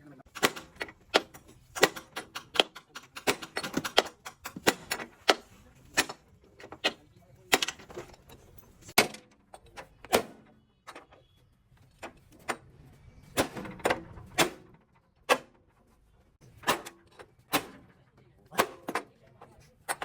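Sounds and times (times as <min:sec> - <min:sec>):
hand tools knocking and clanking: 0:00.3 - 0:11.1.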